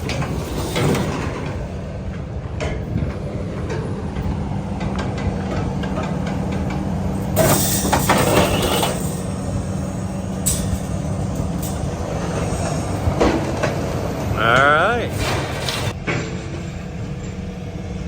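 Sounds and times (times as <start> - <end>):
metal clank: 0.0 - 1.9, 4.8 - 16.6
clattering and banging: 0.0 - 16.6.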